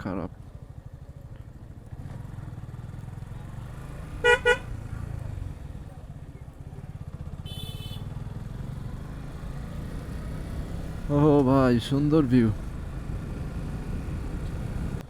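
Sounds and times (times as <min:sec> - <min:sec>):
motorcycle engine running: 0:00.3 - 0:15.0
horn beeps: 0:04.2 - 0:04.7.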